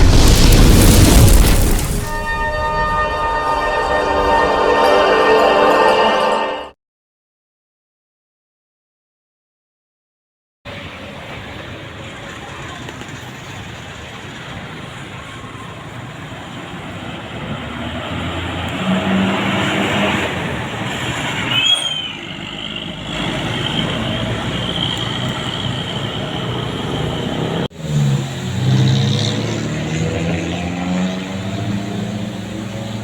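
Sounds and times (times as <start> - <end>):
short high squeal: 1.4 - 4.8, 21.5 - 22.4
bus engine running close: 10.7 - 33.0
bus passing: 10.7 - 33.0
road traffic: 10.7 - 33.0.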